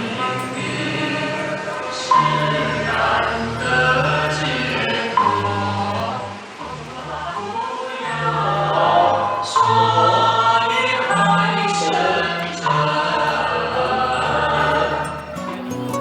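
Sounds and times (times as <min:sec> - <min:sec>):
choir-like voices holding chords: 0:00.0 - 0:16.0.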